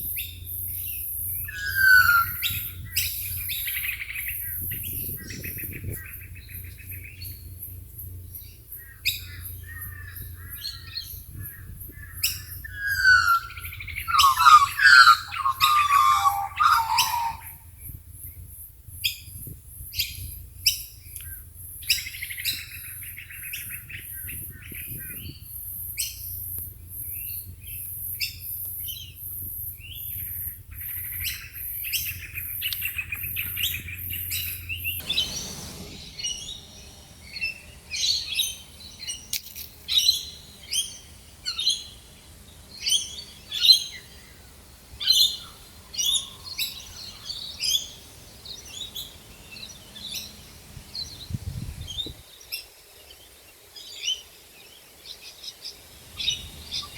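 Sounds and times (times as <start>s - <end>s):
wild birds calling and chirping: 0.1s - 17.8s, 29.7s - 51.3s
bird repeating a loud call: 1.5s - 2.7s, 12.7s - 17.6s.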